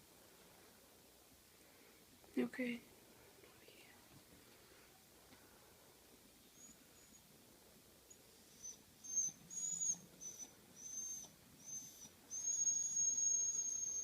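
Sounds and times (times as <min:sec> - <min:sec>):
small dog whining: 0:06.4 - 0:07.3, 0:08.1 - 0:14.0.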